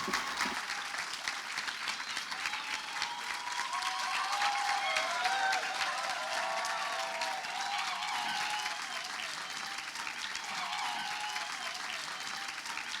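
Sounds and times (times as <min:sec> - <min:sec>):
audience applauding: 0:00.0 - 0:13.0
voices cheering: 0:00.0 - 0:13.0.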